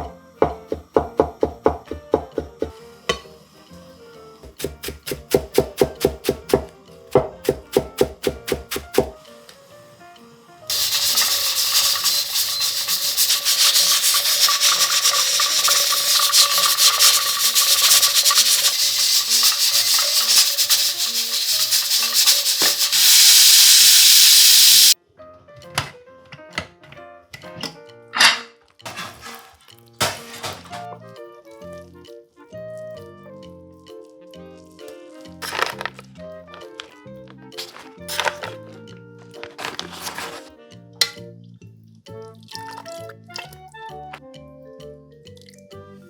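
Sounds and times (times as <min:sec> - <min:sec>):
background music: 0:00.0 - 0:22.8, 0:25.0 - 0:46.0
loud steady hiss: 0:10.7 - 0:25.0.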